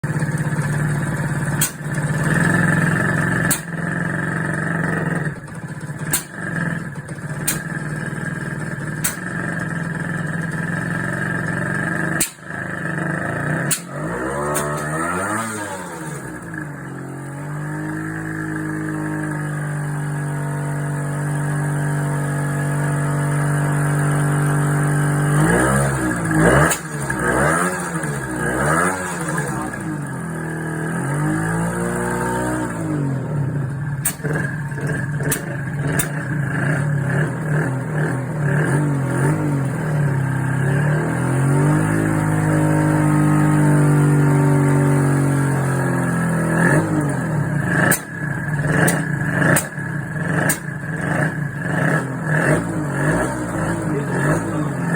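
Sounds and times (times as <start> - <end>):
motorcycle engine idling and revving: 0.0 - 54.9
sharp popping bangs: 1.4 - 2.5, 3.4 - 4.0, 5.6 - 8.1, 8.9 - 9.6, 12.1 - 12.9, 13.5 - 15.4, 26.6 - 27.3, 34.0 - 36.8, 47.7 - 51.4.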